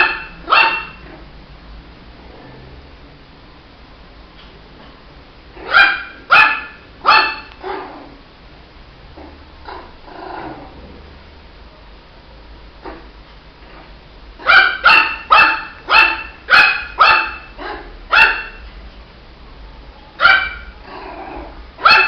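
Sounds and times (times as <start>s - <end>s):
puppy barking: 0.0s - 1.2s, 5.6s - 8.1s, 14.4s - 18.6s, 20.2s - 21.0s, 21.8s - 22.0s.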